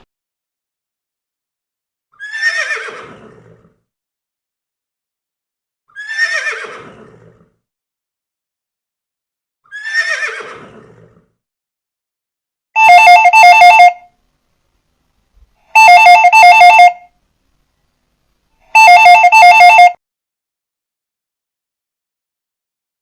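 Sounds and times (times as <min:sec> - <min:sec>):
horse whinnying: 0:02.2 - 0:03.8, 0:05.9 - 0:07.6, 0:09.7 - 0:11.3
two-tone phone ringtone: 0:12.8 - 0:14.1, 0:15.8 - 0:17.1, 0:18.8 - 0:20.0.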